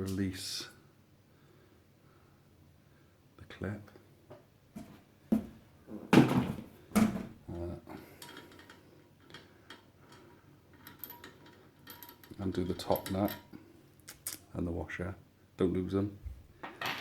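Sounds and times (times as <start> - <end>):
clatter of metal parts: 8.1 - 13.6, 16.6 - 17.0.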